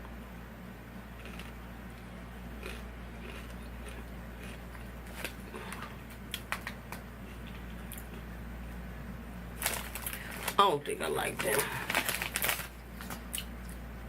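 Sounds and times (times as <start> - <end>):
steady low hum: 0.0 - 14.0
person crunching potato chips: 1.2 - 1.6, 2.6 - 8.2, 9.6 - 10.6, 11.2 - 13.8.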